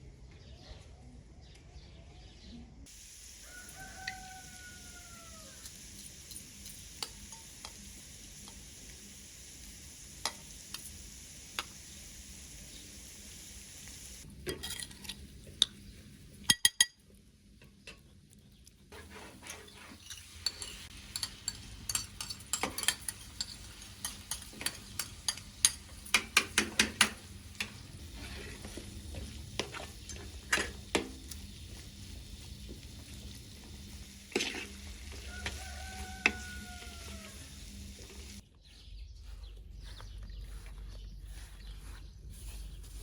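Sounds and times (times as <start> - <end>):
food sizzling in a frying pan: 2.8 - 16.4, 18.9 - 38.4
utensil clinking and scraping pan: 14.5 - 15.2, 19.0 - 31.3, 34.3 - 37.0.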